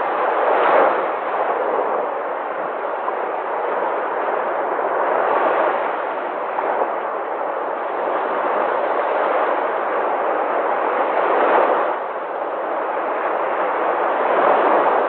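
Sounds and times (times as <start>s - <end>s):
sea waves breaking: 0.0s - 15.0s.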